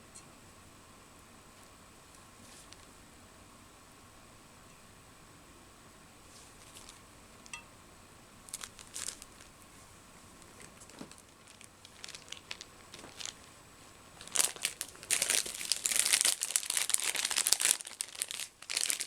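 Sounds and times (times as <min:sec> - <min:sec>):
plastic bag crinkling: 0:06.4 - 0:07.0, 0:08.5 - 0:09.6, 0:10.4 - 0:19.0.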